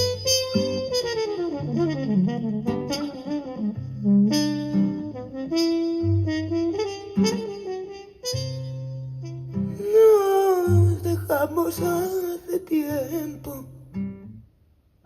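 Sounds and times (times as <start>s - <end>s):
ranchera lead melody: 0.0s - 14.6s.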